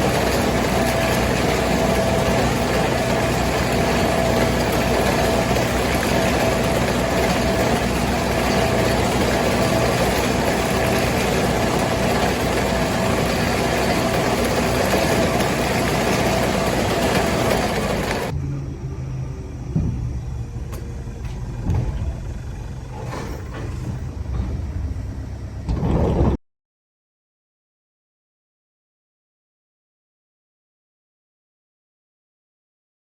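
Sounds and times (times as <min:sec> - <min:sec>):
tractor engine running: 0:00.0 - 0:26.3
steady whine: 0:00.0 - 0:26.4.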